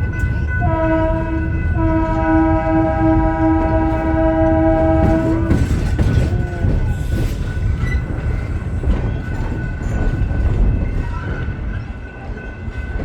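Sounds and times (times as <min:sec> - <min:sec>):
train low rumble: 0:00.0 - 0:13.0
train horn chord: 0:00.5 - 0:05.9.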